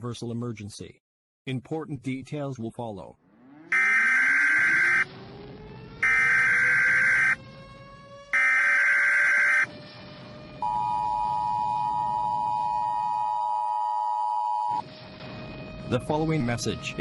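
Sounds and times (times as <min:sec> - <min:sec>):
warbling data tones: 0:03.5 - 0:05.0, 0:06.0 - 0:07.4
two-tone attention signal: 0:03.7 - 0:05.0, 0:06.0 - 0:07.4, 0:08.4 - 0:09.7.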